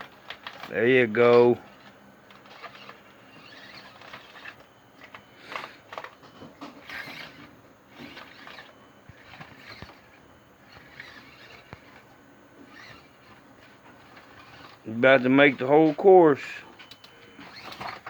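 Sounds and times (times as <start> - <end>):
electric motor whirring: 1.4 - 6.2, 6.8 - 16.0, 16.8 - 18.0.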